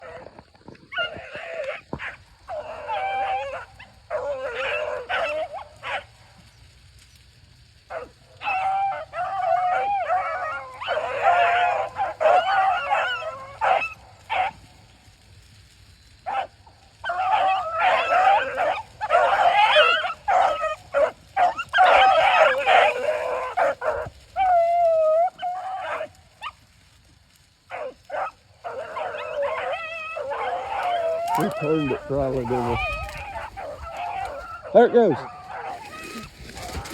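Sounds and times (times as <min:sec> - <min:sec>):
hounds baying: 0:00.0 - 0:06.6, 0:07.9 - 0:14.8, 0:16.2 - 0:26.7, 0:27.6 - 0:36.9.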